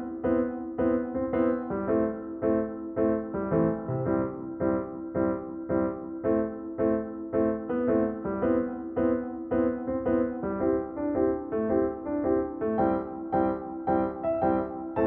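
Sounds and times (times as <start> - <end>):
piano playing steady notes: 0.0 - 15.0.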